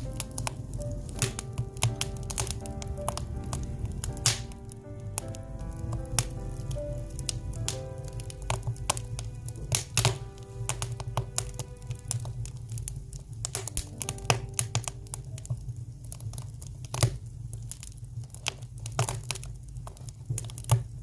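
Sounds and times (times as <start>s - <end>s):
firewood crackling and popping: 0.0s - 21.0s.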